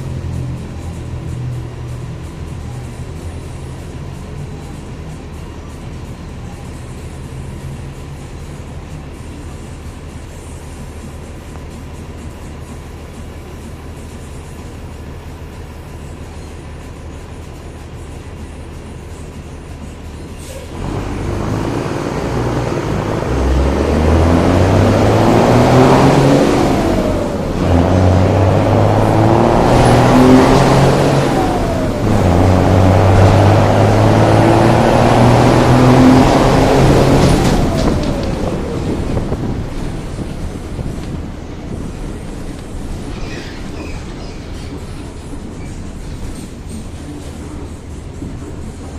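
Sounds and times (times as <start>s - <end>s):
vehicle engine idling: 0.0s - 48.9s
engine roaring under full throttle: 19.8s - 43.8s.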